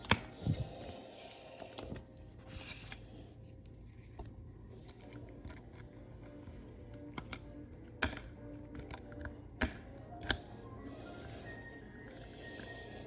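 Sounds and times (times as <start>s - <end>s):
faint background music: 0.0s - 13.0s
padlock clicks and scrapes: 7.0s - 10.5s.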